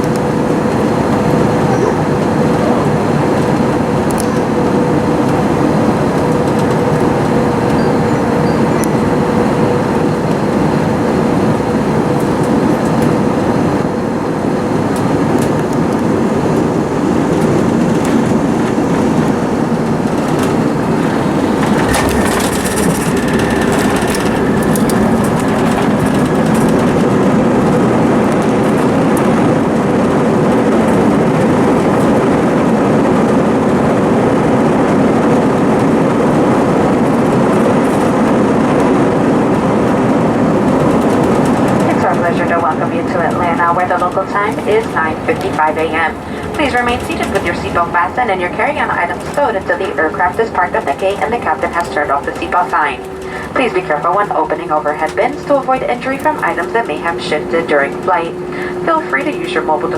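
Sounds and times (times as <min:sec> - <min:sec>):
airliner engines and wheels rumbling: 0:00.0 - 0:59.9
high steady tone: 0:42.8 - 0:59.9.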